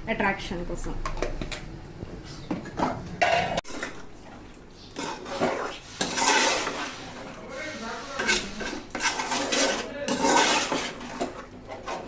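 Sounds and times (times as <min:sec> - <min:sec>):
metal spoon scraping a pan: 0:04.8 - 0:12.0.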